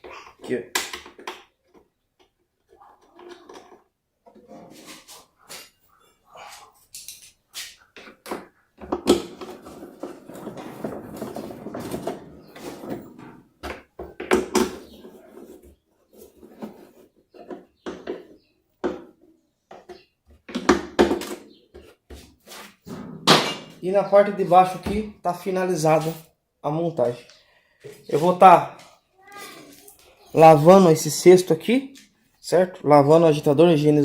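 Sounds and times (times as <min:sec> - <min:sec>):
rattling and scraping: 0:08.0 - 0:19.2, 0:22.4 - 0:24.8.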